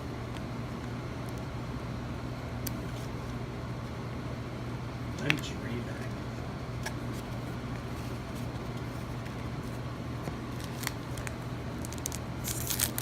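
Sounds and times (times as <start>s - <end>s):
steady low hum: 0.0s - 13.0s
cards flipping with crisp ticks: 5.2s - 5.5s, 6.8s - 13.0s.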